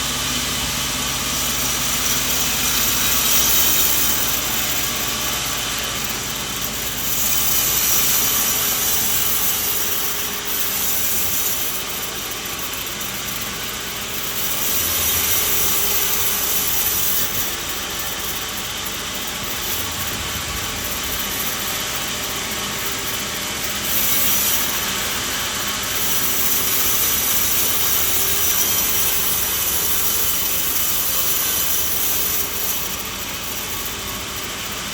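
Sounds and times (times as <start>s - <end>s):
sawmill machine running: 0.0s - 34.9s
saw blade cutting log: 1.0s - 34.9s.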